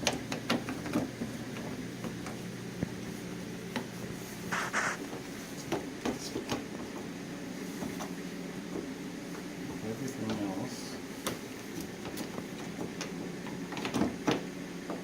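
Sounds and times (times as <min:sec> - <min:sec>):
brief scrape: 0:04.5 - 0:05.0.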